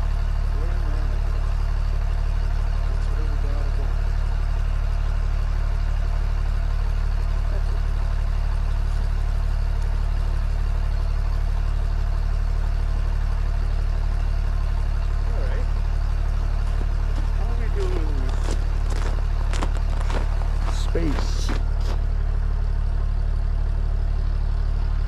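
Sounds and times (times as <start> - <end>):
engine idling: 0.0 - 25.0.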